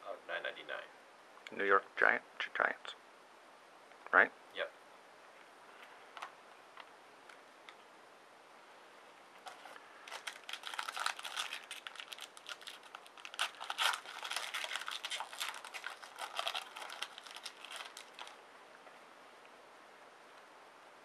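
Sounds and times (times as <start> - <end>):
foil wrapper tearing and crinkling: 9.4 - 18.4.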